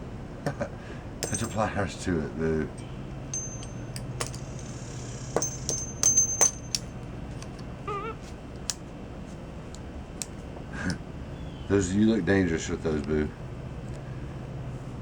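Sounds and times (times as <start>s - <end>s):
metal hand tools clicking: 1.2s - 1.7s, 3.3s - 7.6s
thin high metallic ring: 1.2s - 1.8s, 2.7s - 7.0s.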